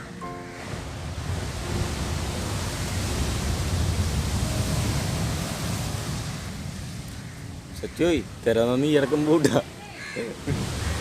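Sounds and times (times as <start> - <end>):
rough sea rushing: 0.0 - 11.0
wind low rumble: 0.7 - 8.7.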